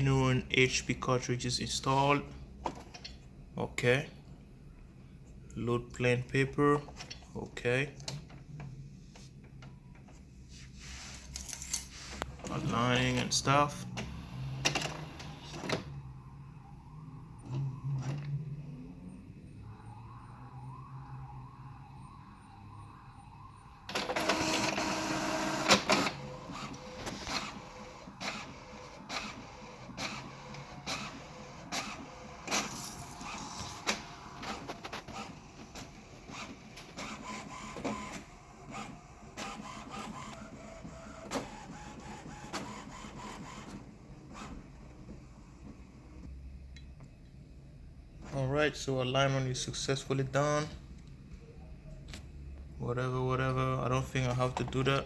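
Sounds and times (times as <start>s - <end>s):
printer paper feed noise: 11.1s - 15.9s, 23.9s - 46.3s
print carriage clicks and whirs: 12.2s - 16.0s, 23.9s - 46.3s.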